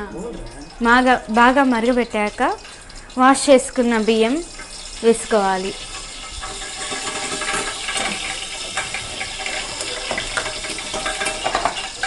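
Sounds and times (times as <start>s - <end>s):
water splashing and bubbling: 0.0s - 12.0s.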